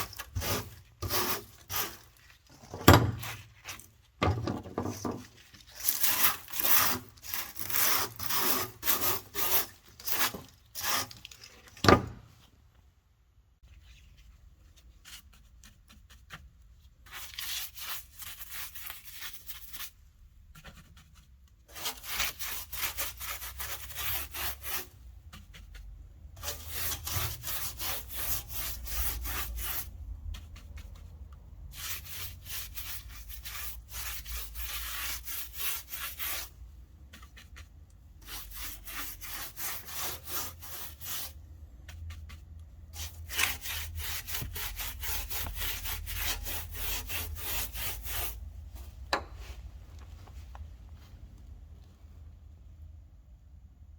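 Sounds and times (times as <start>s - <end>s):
hand sanding scraping: 0.0s - 2.3s, 5.8s - 11.3s, 21.7s - 36.6s, 38.2s - 42.4s, 43.0s - 48.5s.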